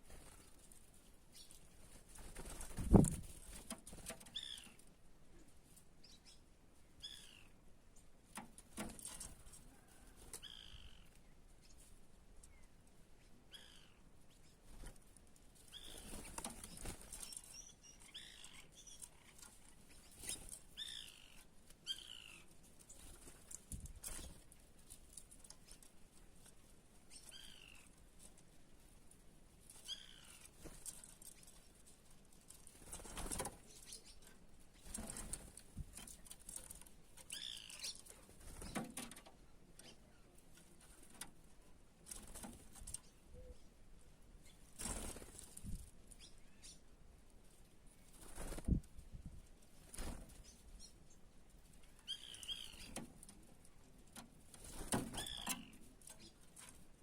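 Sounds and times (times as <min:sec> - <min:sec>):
small birds wings flapping: 0:00.0 - 0:04.7, 0:14.6 - 0:17.6, 0:19.0 - 0:20.8, 0:22.7 - 0:26.7, 0:29.7 - 0:39.4, 0:42.0 - 0:43.1, 0:44.6 - 0:46.0, 0:48.0 - 0:50.7, 0:52.7 - 0:57.0
bird chirp: 0:04.3 - 0:04.8, 0:05.4 - 0:08.1, 0:10.4 - 0:14.7, 0:15.7 - 0:23.0, 0:27.1 - 0:27.9, 0:29.8 - 0:30.5, 0:33.6 - 0:35.0, 0:37.2 - 0:39.0, 0:46.1 - 0:47.0, 0:50.3 - 0:53.1, 0:55.1 - 0:56.4.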